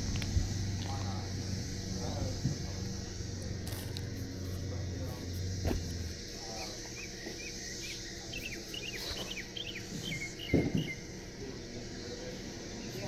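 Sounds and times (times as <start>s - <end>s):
cicadas droning: 0.0s - 13.0s
dull thumps: 5.6s - 6.0s
small bird chirping: 5.9s - 11.2s.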